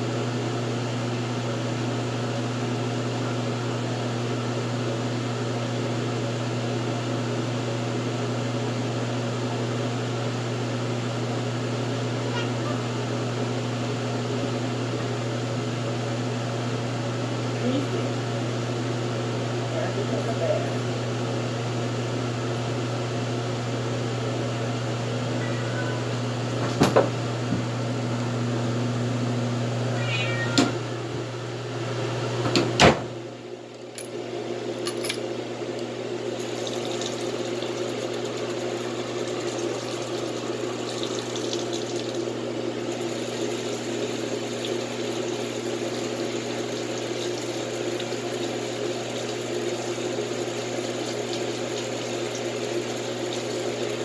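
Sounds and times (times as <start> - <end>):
pet crying: 12.1 - 13.0, 25.3 - 26.3, 29.9 - 31.2
running water: 36.2 - 54.0.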